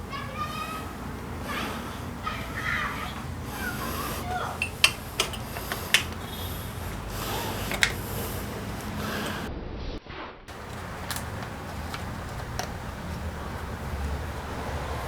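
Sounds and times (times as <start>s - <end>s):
small metal parts clinking: 4.6s - 9.4s
sharp clicks: 4.6s - 9.5s.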